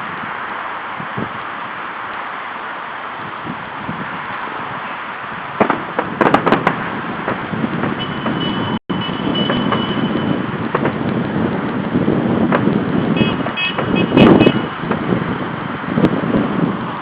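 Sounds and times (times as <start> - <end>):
city traffic: 0.0 - 17.0
wind: 0.0 - 17.0
fireworks banging: 5.5 - 15.1.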